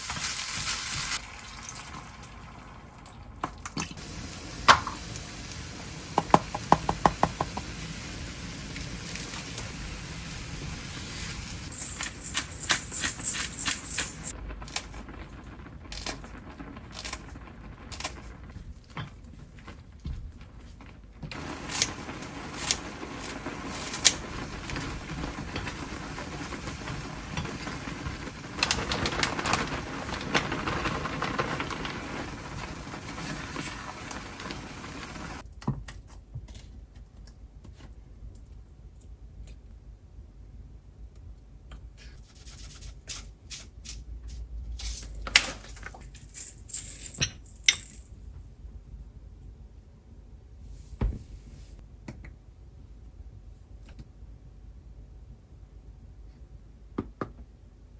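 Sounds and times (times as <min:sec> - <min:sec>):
steady hiss: 0:04.0 - 0:18.5, 0:21.3 - 0:35.4
utensils and containers clicking: 0:11.7 - 0:14.8.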